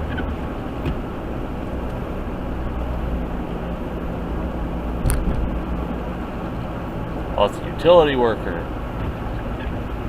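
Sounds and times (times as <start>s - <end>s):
truck engine and road noise: 0.0s - 10.0s.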